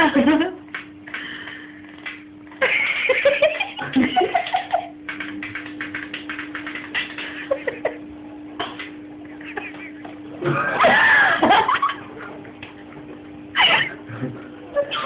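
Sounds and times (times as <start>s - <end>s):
steady low hum: 0.0s - 15.0s
people laughing: 2.6s - 4.9s, 7.2s - 8.0s, 9.2s - 12.2s.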